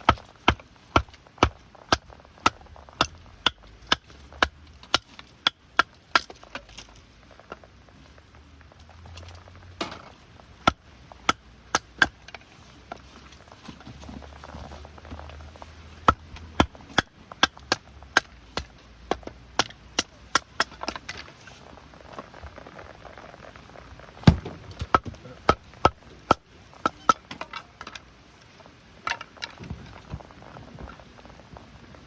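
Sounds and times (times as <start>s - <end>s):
wood being chopped: 0.0s - 6.9s, 9.8s - 13.0s, 16.0s - 21.3s, 24.2s - 27.5s.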